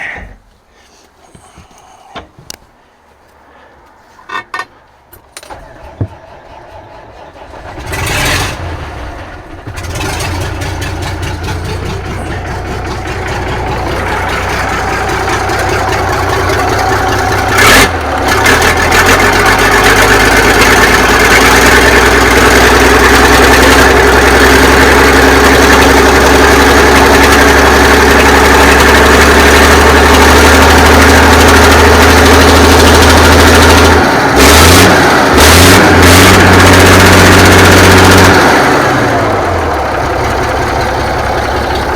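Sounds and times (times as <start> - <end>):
diesel engine cranking and running: 4.3 - 41.9.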